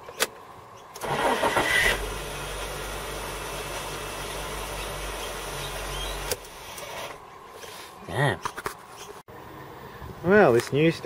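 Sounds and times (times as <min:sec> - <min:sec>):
starter motor spinning: 0:01.0 - 0:02.1
starter motor cranking engine: 0:01.0 - 0:02.8
car engine idling: 0:01.0 - 0:06.6.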